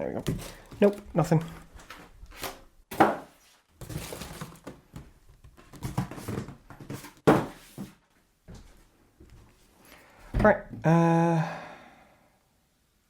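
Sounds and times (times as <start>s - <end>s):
cardboard packaging rustling: 0.2s - 8.0s.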